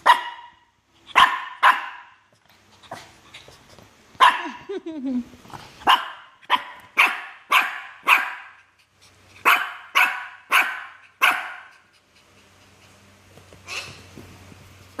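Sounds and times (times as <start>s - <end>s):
small dog barking: 0.0s - 2.2s, 4.2s - 4.6s, 5.8s - 8.6s, 9.4s - 11.8s.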